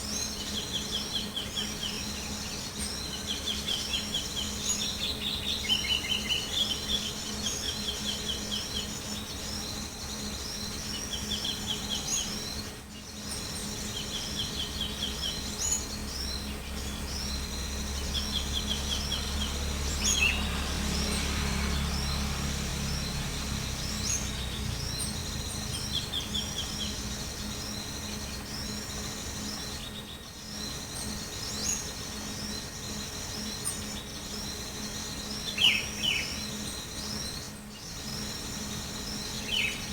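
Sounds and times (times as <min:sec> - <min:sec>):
small birds chirping: 0:00.0 - 0:39.9
low rumble: 0:16.6 - 0:27.4.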